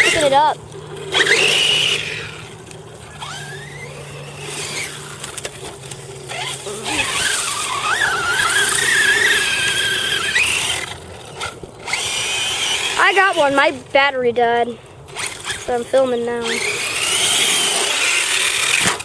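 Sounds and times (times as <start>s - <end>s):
toy car motor whining: 0.0s - 13.8s, 15.0s - 19.0s.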